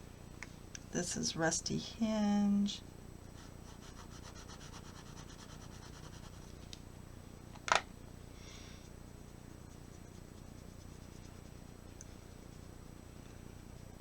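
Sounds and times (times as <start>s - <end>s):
pencil scribbling on paper: 3.4s - 6.5s.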